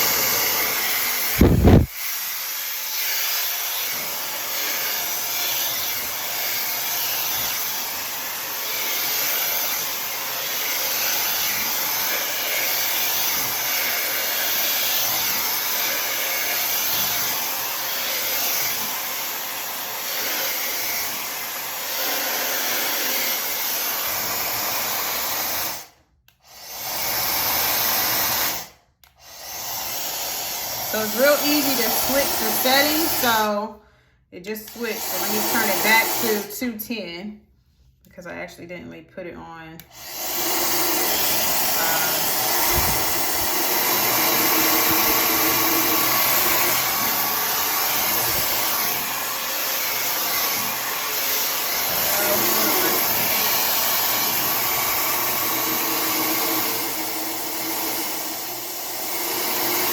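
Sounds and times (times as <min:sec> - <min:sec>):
hair dryer blowing: 0:00.0 - 0:33.8, 0:34.4 - 0:37.2, 0:39.8 - 0:59.9.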